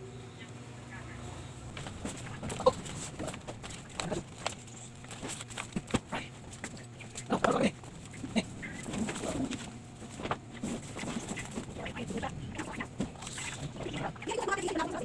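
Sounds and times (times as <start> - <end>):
birds calling: 6.0 - 14.6.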